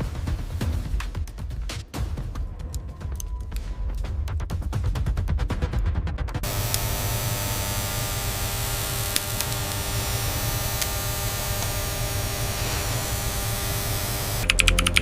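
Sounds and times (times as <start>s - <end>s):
steady hiss: 6.4s - 14.4s
low hum: 6.4s - 15.0s
faint clicks: 9.0s - 11.9s.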